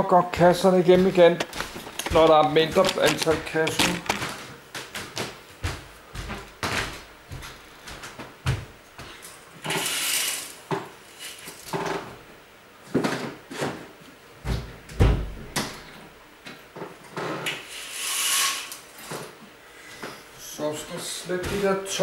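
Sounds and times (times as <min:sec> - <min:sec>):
scraping or rustling: 0:00.9 - 0:04.5, 0:17.2 - 0:19.3.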